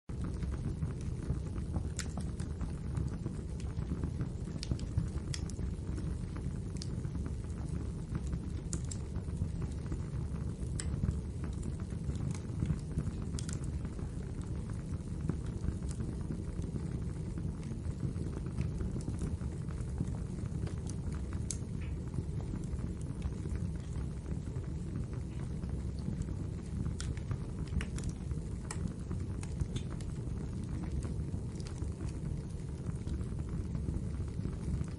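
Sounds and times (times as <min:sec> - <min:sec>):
fire pops and snaps: 0:00.1 - 0:34.9
low rumble of flames: 0:00.1 - 0:34.9
wood fire crackling: 0:00.1 - 0:34.9.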